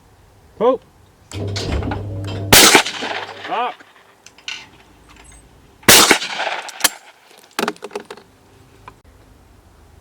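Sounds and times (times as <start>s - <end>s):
shotgun shot echoing: 1.4s - 3.6s, 5.9s - 7.0s.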